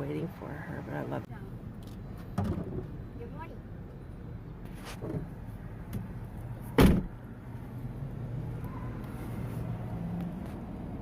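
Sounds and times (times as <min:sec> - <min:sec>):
low hum of car: 0:00.0 - 0:11.0
car door shutting: 0:06.7 - 0:07.2.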